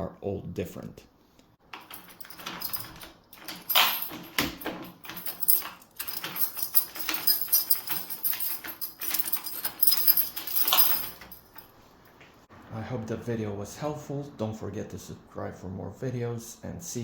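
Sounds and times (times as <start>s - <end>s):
keys and door lock rattling: 1.7s - 11.8s.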